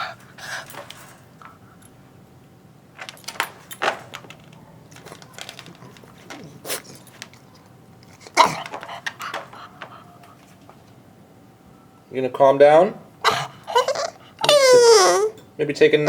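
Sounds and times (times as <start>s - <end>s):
puppy yipping and barking: 13.2s - 15.4s.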